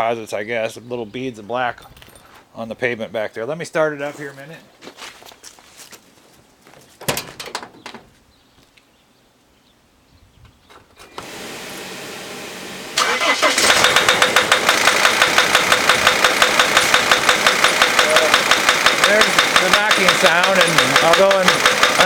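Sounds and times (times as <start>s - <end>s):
clunks: 7.0s - 8.1s, 13.0s - 22.0s
diesel engine cranking: 11.0s - 12.1s, 12.8s - 22.0s
diesel engine idling with knock: 13.7s - 22.0s.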